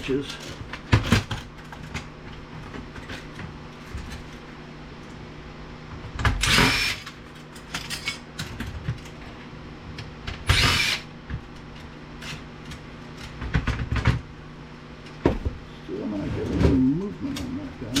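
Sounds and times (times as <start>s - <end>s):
cordless power screwdriver running: 6.4s - 7.0s, 10.5s - 11.0s.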